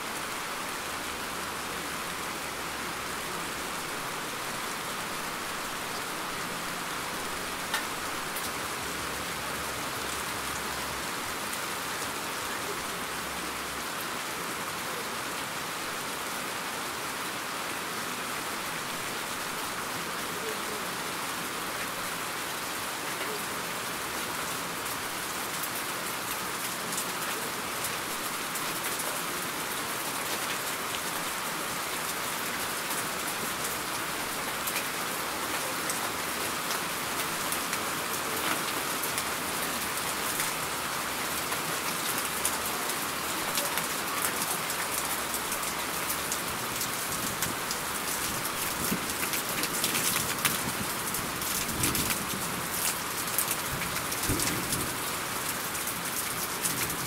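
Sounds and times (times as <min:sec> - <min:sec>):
steady rain hiss: 0:00.0 - 0:57.0
raindrops pattering: 0:00.2 - 0:13.8, 0:30.4 - 0:57.0.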